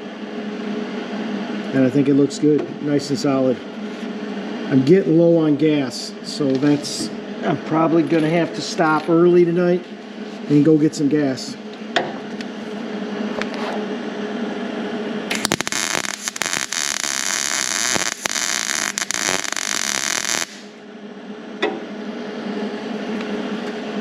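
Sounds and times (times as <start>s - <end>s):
steady hum: 0.0s - 24.0s
welder arc crackling: 15.3s - 20.8s.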